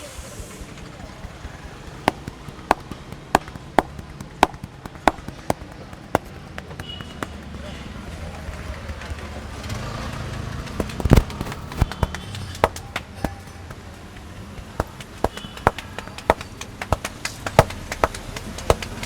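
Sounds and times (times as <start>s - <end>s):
hands slapping on a head: 10.8s - 13.8s, 14.8s - 19.0s.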